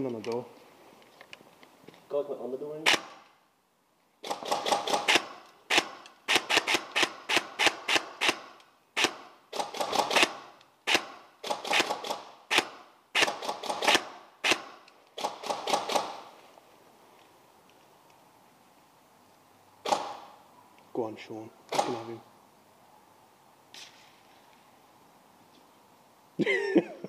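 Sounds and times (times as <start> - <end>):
airsoft gun shots: 4.2 - 16.3, 19.8 - 20.4, 21.7 - 22.2.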